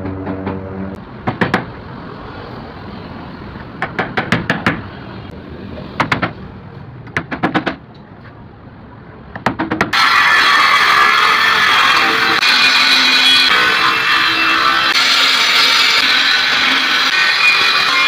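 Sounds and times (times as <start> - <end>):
sharp knocks: 0.0 - 1.7, 9.4 - 10.0.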